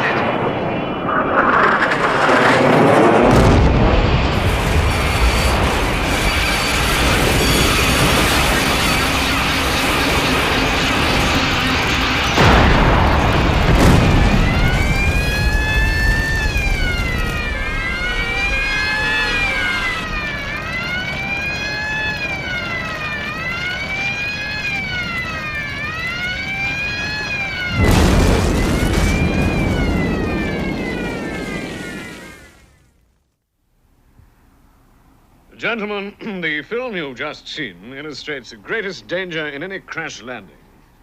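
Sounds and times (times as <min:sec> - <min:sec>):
heavy crashing noise: 0:00.0 - 0:20.6, 0:27.7 - 0:32.9
explosion and fire: 0:00.0 - 0:23.1, 0:23.9 - 0:33.2
emergency sirens wailing: 0:00.0 - 0:32.9.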